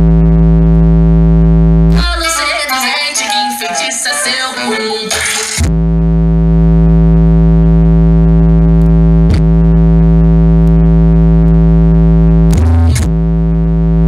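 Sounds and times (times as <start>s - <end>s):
deep subwoofer bass tone: 0.0s - 2.5s, 5.6s - 14.0s.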